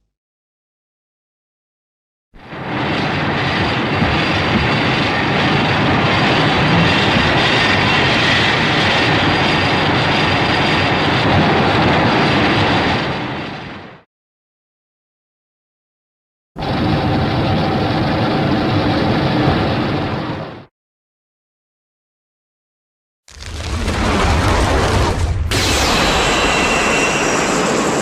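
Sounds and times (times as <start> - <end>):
dense rushing noise: 2.5 - 8.8.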